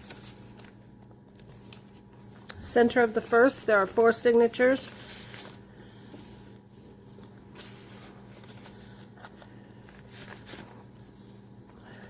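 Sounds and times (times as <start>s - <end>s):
paper pages rustling: 0.0s - 12.0s.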